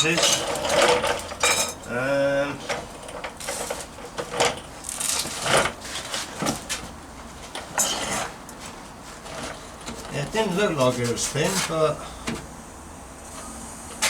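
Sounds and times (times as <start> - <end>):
metal parts knocking and scraping: 0.0 - 1.8.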